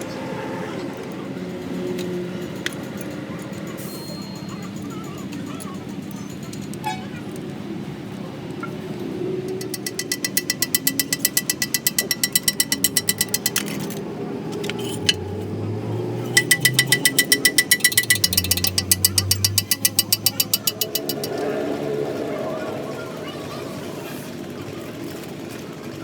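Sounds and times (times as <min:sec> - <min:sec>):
rapid metallic hammering: 0:09.4 - 0:22.6.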